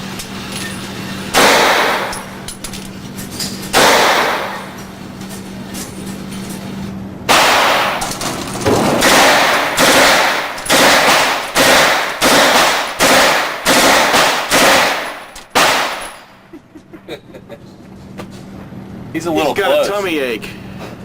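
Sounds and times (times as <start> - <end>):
gunshots with echo: 1.3 - 2.4, 3.7 - 4.8, 7.3 - 16.3.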